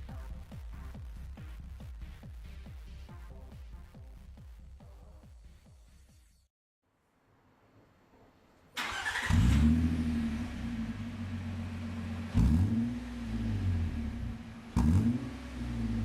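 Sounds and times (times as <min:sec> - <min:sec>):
car engine starting: 0:08.8 - 0:16.0
engine throttle blips: 0:08.8 - 0:16.0
deep engine idle: 0:09.8 - 0:14.8.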